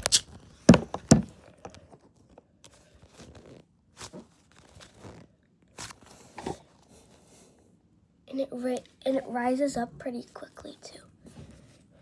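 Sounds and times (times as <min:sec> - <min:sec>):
foam toy being squeezed: 0:00.0 - 0:01.2.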